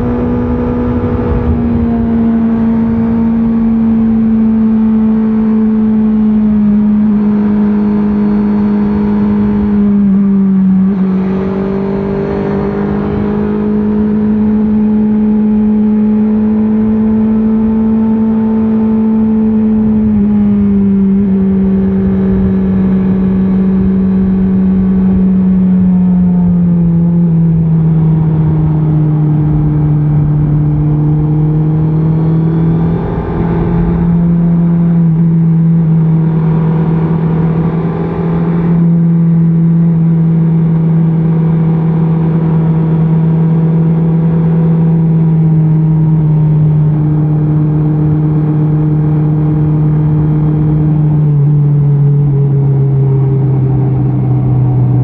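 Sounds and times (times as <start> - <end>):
low wind rumble: 0.0 - 7.2, 19.4 - 55.0
motorcycle engine cruising: 0.0 - 55.0.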